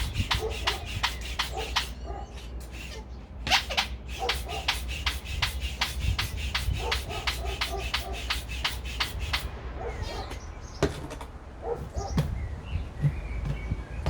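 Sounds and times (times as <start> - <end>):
air pump strokes: 0.0 - 10.4
small knocks: 10.3 - 14.0.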